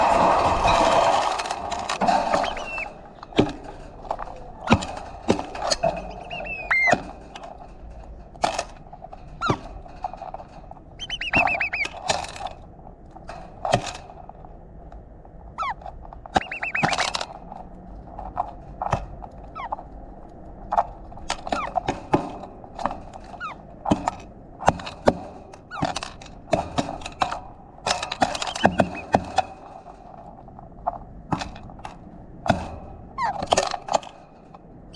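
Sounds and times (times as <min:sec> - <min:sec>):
birds pecking seed: 0:00.0 - 0:34.9
short high bird chirps: 0:02.4 - 0:02.9, 0:06.0 - 0:06.9, 0:11.0 - 0:11.9, 0:16.4 - 0:17.0, 0:28.4 - 0:29.0.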